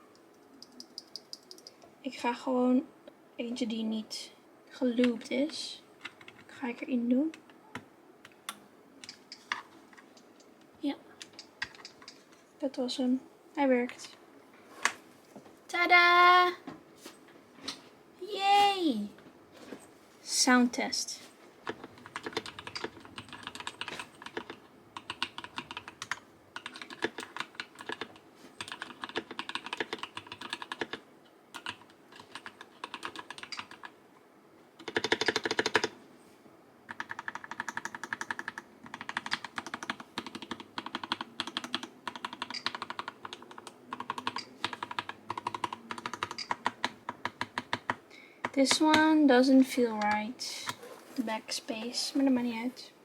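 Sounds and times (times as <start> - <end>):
mechanical keyboard typing: 0.1 - 1.8, 6.0 - 6.5, 21.6 - 33.9, 34.8 - 36.0, 36.9 - 48.0.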